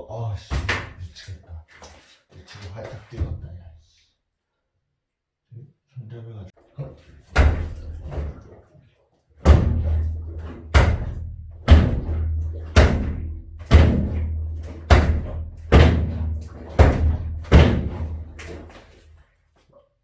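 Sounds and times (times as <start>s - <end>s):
heavy bangs with low ringing: 9.4s - 18.6s.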